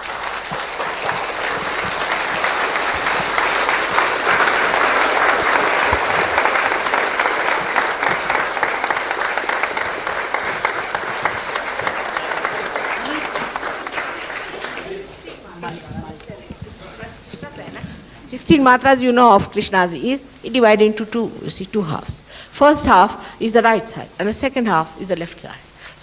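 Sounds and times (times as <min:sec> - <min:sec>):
audience applause: 0:00.0 - 0:18.8.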